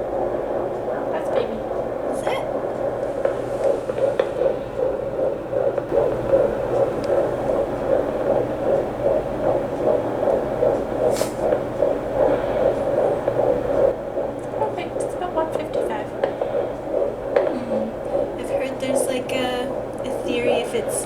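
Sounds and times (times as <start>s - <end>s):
fetal heartbeat pulse: 0.0s - 21.0s
steady low hum: 0.0s - 21.0s.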